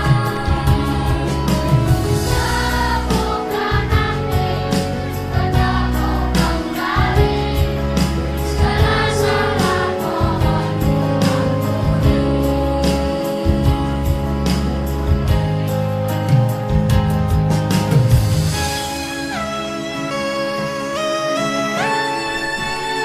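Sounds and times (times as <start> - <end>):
children's choir singing: 0.0 - 13.5
accompaniment with bass and beat: 0.0 - 20.1.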